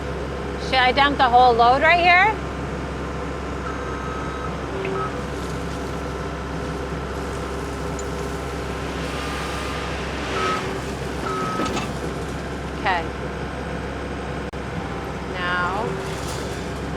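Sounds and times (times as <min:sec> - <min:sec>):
loader diesel engine running: 0:00.0 - 0:16.9
hydraulic whine: 0:02.4 - 0:16.9.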